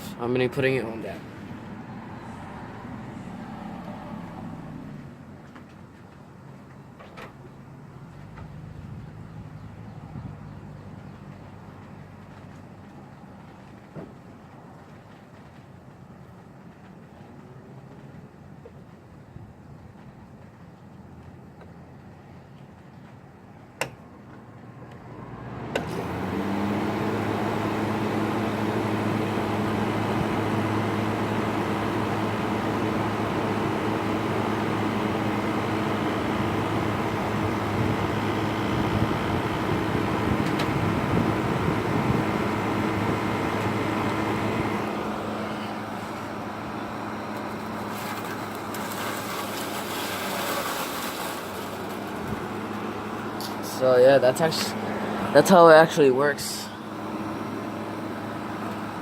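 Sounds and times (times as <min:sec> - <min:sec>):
air conditioner humming: 0:00.0 - 0:03.5, 0:25.8 - 0:59.0.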